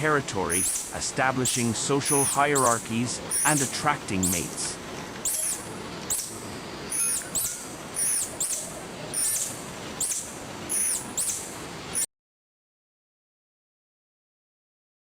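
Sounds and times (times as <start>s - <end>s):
tarsier high-pitched chirps: 0.5s - 4.6s, 5.2s - 12.1s.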